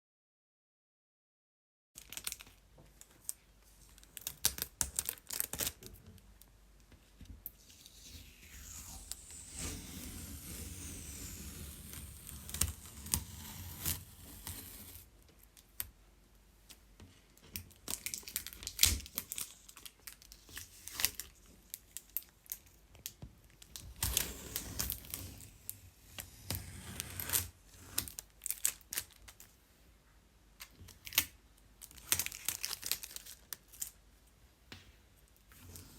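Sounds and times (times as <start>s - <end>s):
adhesive tape peeling: 7.6s - 15.1s, 26.3s - 28.2s.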